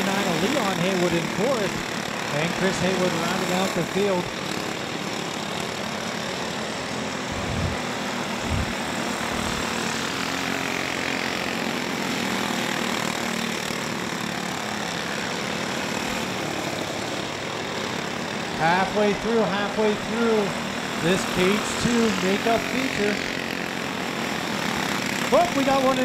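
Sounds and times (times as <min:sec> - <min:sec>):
kart engines racing: 0:00.0 - 0:26.0
low thumps: 0:07.3 - 0:07.8, 0:08.4 - 0:08.8.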